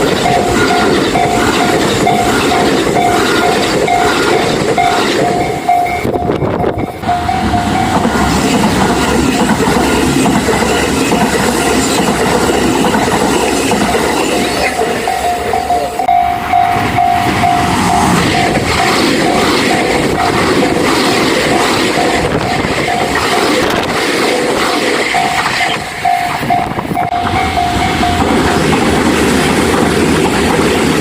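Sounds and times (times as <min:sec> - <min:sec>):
level crossing warning bell: 0:00.0 - 0:24.0, 0:25.0 - 0:31.0
train running past: 0:00.0 - 0:31.0.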